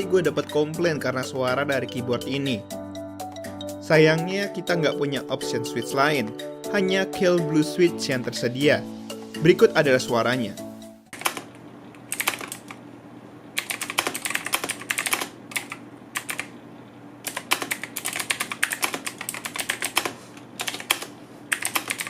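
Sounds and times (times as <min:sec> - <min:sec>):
mechanical keyboard typing clicks: 0:11.1 - 0:12.8, 0:13.6 - 0:16.5, 0:17.2 - 0:22.0.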